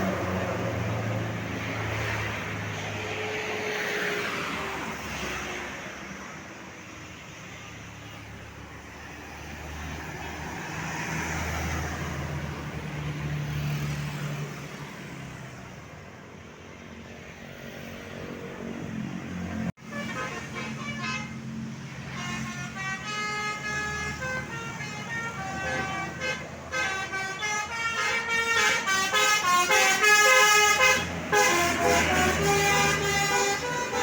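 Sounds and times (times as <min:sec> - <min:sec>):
bus engine and road noise: 0:00.0 - 0:34.0
musical bus horn tune: 0:19.8 - 0:21.4, 0:22.0 - 0:34.0.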